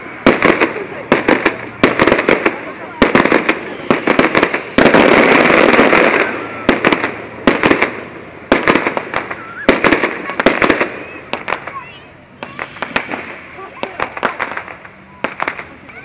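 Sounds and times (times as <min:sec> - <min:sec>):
fireworks bangs and crackles: 0:00.0 - 0:16.0
firework whistle falling: 0:03.4 - 0:07.0, 0:09.2 - 0:10.0.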